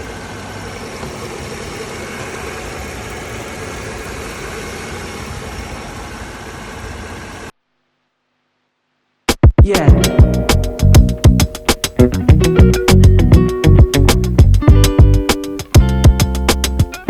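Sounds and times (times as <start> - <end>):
car engine idling: 0.0 - 7.5.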